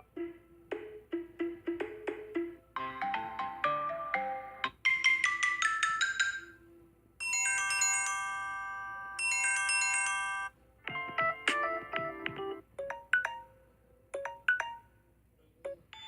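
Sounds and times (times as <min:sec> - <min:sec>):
falling bell-like ringtone notes: 0:07.2 - 0:10.5.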